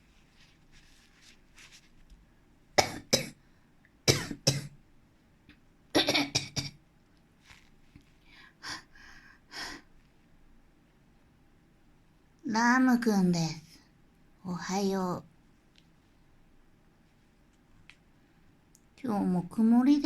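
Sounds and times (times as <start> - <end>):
person coughing: 2.8 - 3.4, 4.1 - 4.8, 6.0 - 6.8
person clearing throat: 4.1 - 4.8, 6.0 - 6.8.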